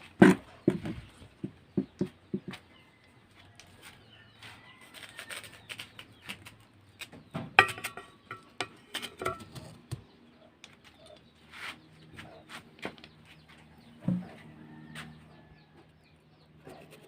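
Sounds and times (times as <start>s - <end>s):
knife scraping melon: 3.7s - 6.6s.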